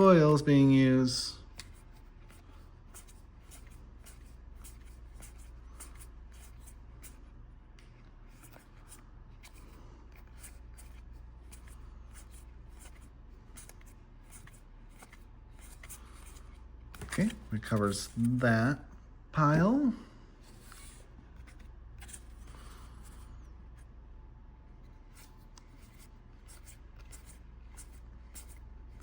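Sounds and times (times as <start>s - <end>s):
cards flicking and rustling: 1.5s - 18.4s.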